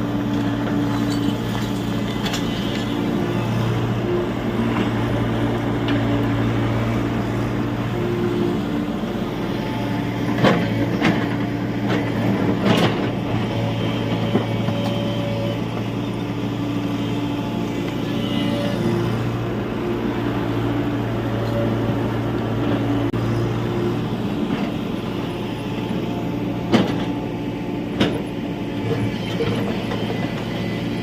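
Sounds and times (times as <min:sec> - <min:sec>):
excavator diesel engine running: 0:00.0 - 0:31.0.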